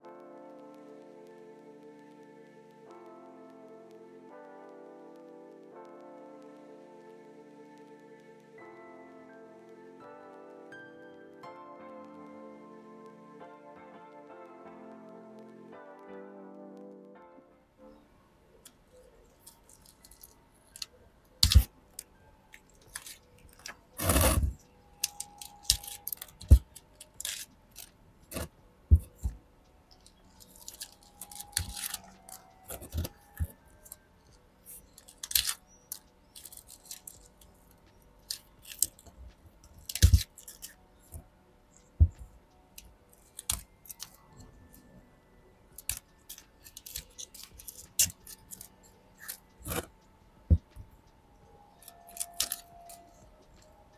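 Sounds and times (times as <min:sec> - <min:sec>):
hands rustling plants: 0:18.7 - 0:44.8.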